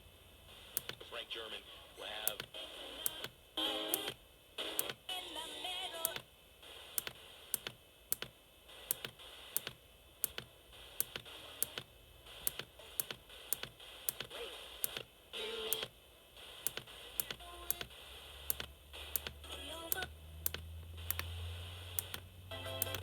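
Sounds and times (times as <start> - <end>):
faint broadcast sound: 0.4 - 7.5
radio hiss: 0.4 - 7.6, 8.7 - 9.7, 10.7 - 20.0.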